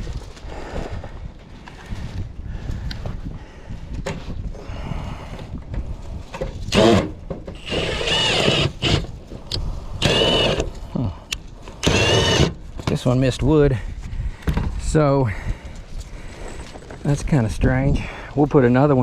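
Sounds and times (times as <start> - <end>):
cordless drill motor whirring: 6.6 - 10.8, 11.7 - 12.6.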